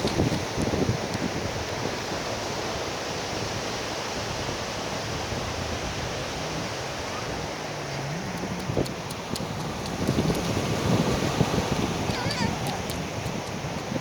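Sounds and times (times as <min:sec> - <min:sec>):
sea surf: 0:00.0 - 0:14.0
wind: 0:00.0 - 0:14.0.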